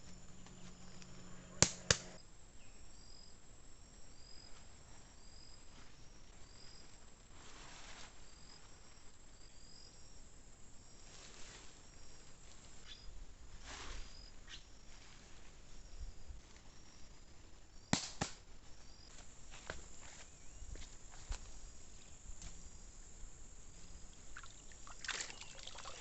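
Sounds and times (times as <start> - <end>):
insects trilling and chirping: 7.9 - 18.0, 18.7 - 26.0.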